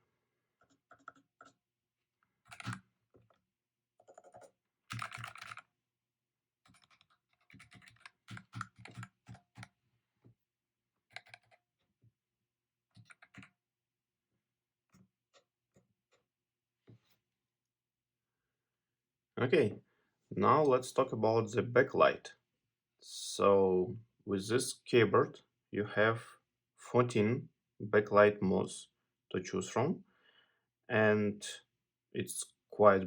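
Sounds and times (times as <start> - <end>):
mechanical keyboard key clicks: 2.5 - 2.8.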